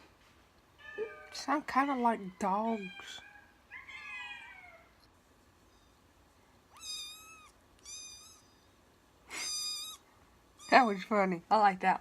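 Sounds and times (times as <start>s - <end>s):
cat meowing: 2.8s - 5.0s, 6.7s - 8.6s, 9.4s - 10.0s.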